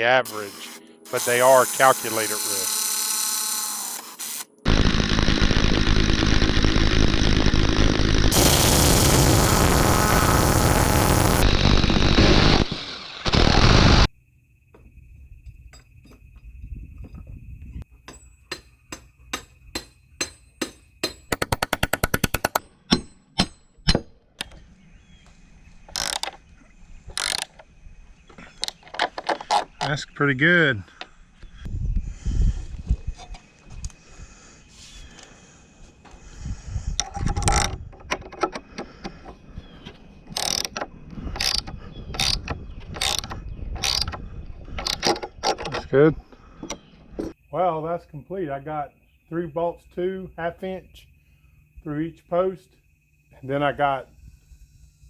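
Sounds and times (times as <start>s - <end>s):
power tool running: 0.2s - 14.1s
ratchet wrench clicking: 21.0s - 22.6s.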